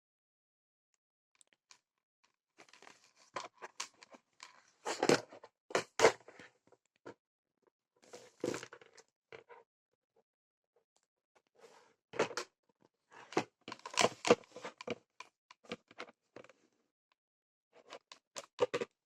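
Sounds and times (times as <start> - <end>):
rustling and scraping handling noise: 2.6 - 6.8, 8.0 - 9.6, 13.1 - 16.7.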